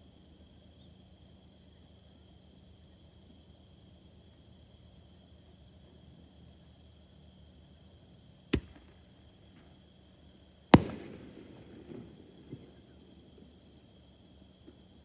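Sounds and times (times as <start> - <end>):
insects chirring: 0.6 - 15.0
crackling pops: 8.6 - 9.0, 10.8 - 13.6
firework bangs: 8.6 - 9.0, 10.8 - 13.9.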